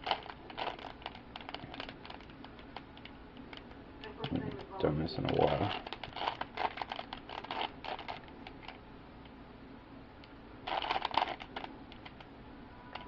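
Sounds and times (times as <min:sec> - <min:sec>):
puzzle cube clicking: 0:05.2 - 0:08.8, 0:10.7 - 0:12.3.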